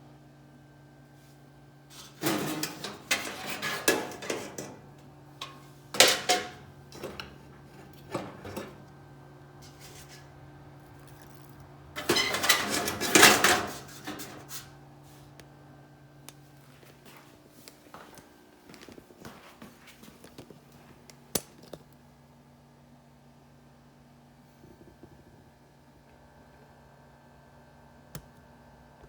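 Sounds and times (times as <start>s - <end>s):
steady low hum: 0.0s - 29.0s
metal objects clattering: 1.9s - 8.8s, 11.0s - 14.5s.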